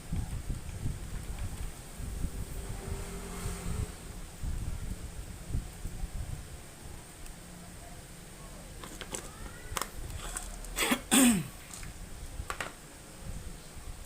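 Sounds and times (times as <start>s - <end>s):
person coughing: 10.8s - 11.6s.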